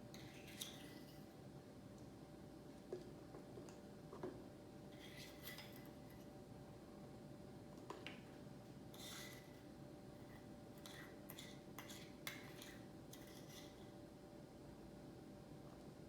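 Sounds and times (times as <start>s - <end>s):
small utensils clicking and scraping: 0.1s - 1.3s, 4.9s - 6.4s, 8.9s - 9.6s, 10.2s - 13.9s.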